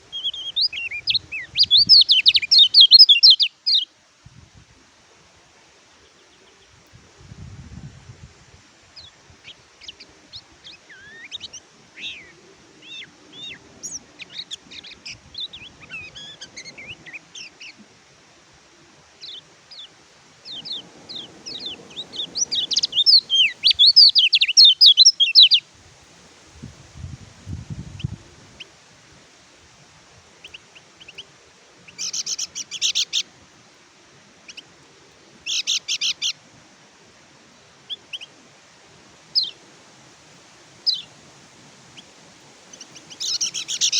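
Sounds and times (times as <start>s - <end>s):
bird singing high twitters: 0.1s - 3.9s, 20.5s - 25.6s, 32.0s - 33.3s, 35.5s - 36.4s, 42.7s - 43.9s.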